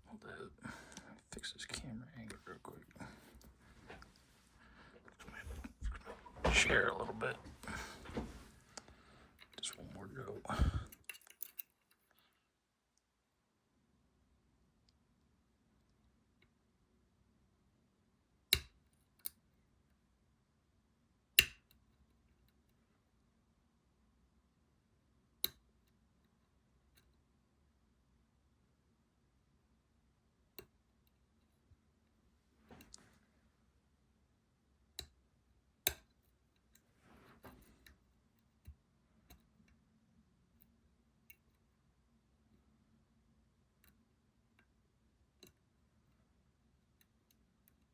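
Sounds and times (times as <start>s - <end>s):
lock-picking tools clicking: 10.8s - 12.0s, 21.4s - 21.7s, 35.9s - 36.8s
lock pick scraping: 10.9s - 12.0s.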